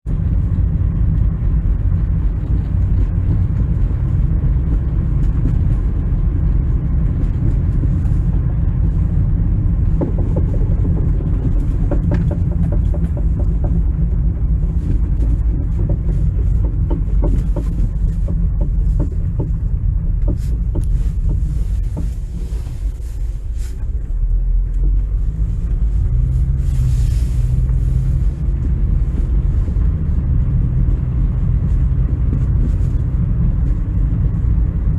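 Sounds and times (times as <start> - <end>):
road and drivetrain rumble: 0.0 - 34.9
irregular knocking from car: 2.4 - 22.5, 27.7 - 34.9.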